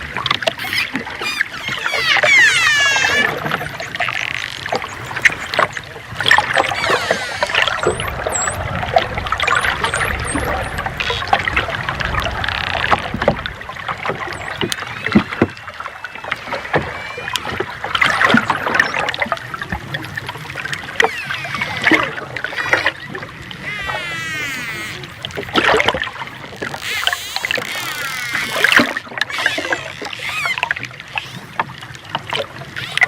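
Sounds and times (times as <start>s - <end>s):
dolphin clicks: 0.3s - 8.6s, 21.0s - 33.0s
dolphin whistles: 0.6s - 5.7s, 6.4s - 8.7s, 23.6s - 25.3s, 29.3s - 31.5s.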